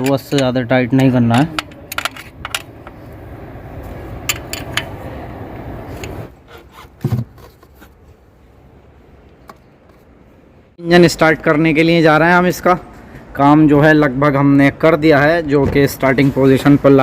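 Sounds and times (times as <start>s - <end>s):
hand tool scraping on engine: 6.0s - 8.0s.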